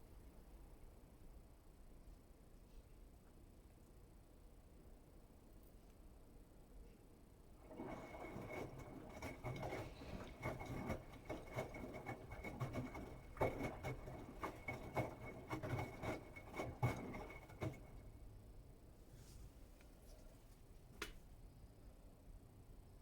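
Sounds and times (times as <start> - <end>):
laundry tumbling and sloshing: 7.6 - 18.2
washing machine motor hum: 7.6 - 19.6.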